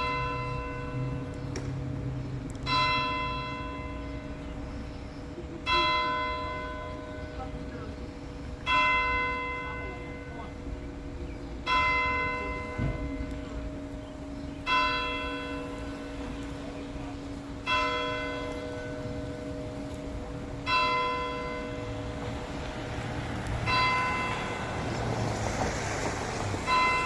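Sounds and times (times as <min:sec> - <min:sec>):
tower bell tolling: 0:11.6 - 0:22.6, 0:23.7 - 0:24.9, 0:26.7 - 0:27.0.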